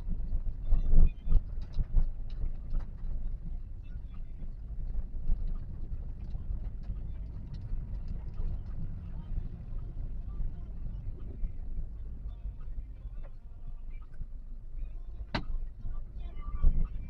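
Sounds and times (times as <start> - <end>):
road and engine rumble: 0.0 - 17.0
light ticks: 4.8 - 9.9
car bumps: 15.3 - 15.6.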